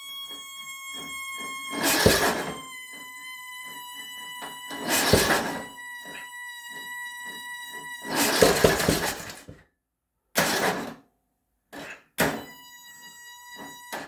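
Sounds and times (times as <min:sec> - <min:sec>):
tractor starter clattering: 0:08.2 - 0:09.5.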